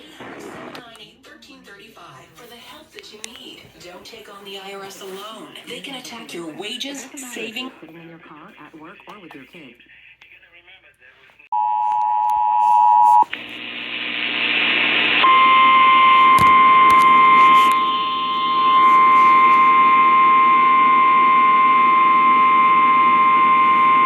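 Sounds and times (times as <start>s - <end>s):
steady single-pitch attention tone: 15.2s - 24.0s.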